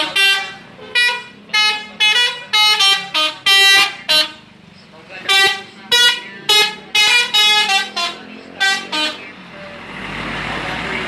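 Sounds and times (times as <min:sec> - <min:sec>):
bus horn tooting a melody: 0:00.0 - 0:04.5, 0:05.3 - 0:09.3.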